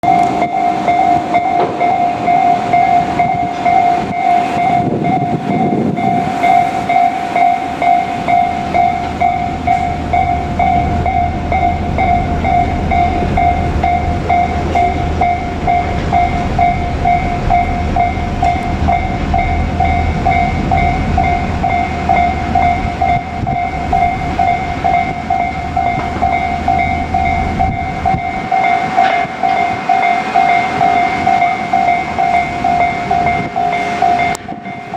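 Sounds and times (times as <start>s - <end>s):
level crossing warning bell: 0.0s - 34.9s
train rumbling past: 0.0s - 34.9s.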